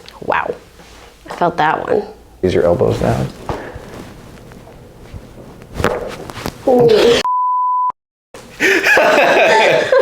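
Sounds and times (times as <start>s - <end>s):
censor bleep: 7.2s - 8.0s.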